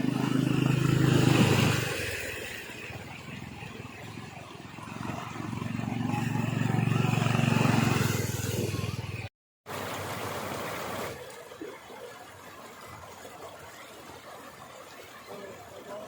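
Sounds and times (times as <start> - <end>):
vehicle engine passing by: 0.0 - 9.3.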